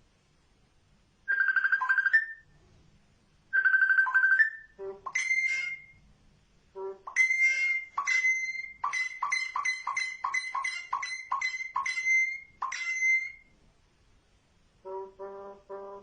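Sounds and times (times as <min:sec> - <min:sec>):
myna whistling ringtone notes: 0:01.3 - 0:02.5, 0:03.5 - 0:06.0, 0:07.1 - 0:13.5.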